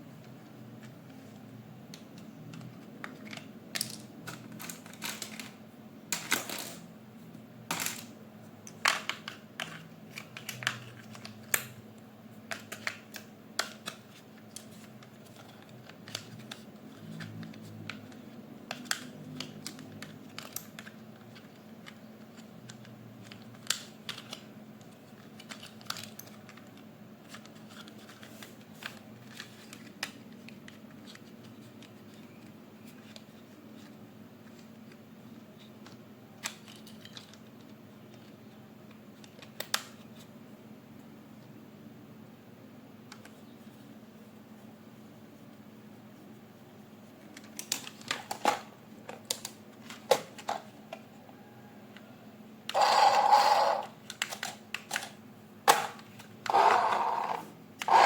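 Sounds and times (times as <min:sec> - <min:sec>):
faint steady hum: 0:00.0 - 0:58.0
plastic toy parts clicking: 0:01.9 - 0:05.5, 0:17.2 - 0:30.3, 0:52.7 - 0:58.0.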